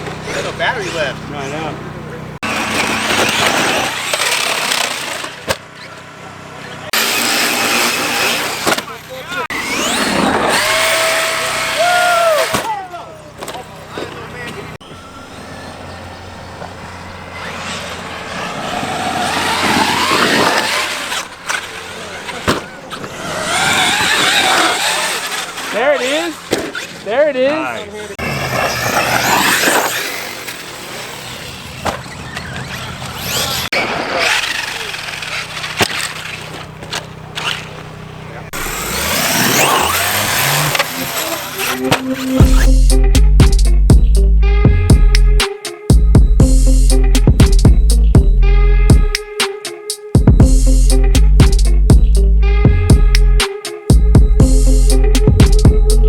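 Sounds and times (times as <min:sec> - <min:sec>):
tyres on dirt: 0:00.0 - 0:42.7
electric motor whining: 0:02.4 - 0:12.7, 0:14.8 - 0:27.1, 0:27.7 - 0:43.0.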